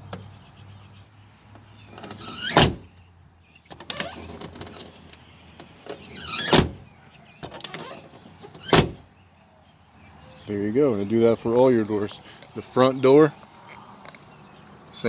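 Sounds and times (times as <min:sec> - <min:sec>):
car door slamming: 0:02.0 - 0:02.9, 0:06.0 - 0:06.8, 0:08.6 - 0:09.0.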